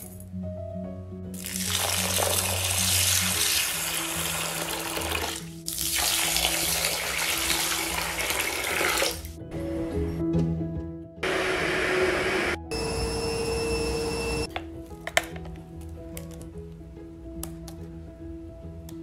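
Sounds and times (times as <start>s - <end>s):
background music: 0.0s - 19.0s
water running from a tap: 1.4s - 9.3s.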